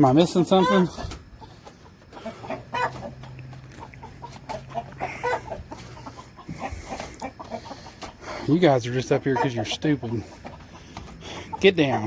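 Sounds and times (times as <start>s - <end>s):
hens clucking: 0.0s - 12.0s.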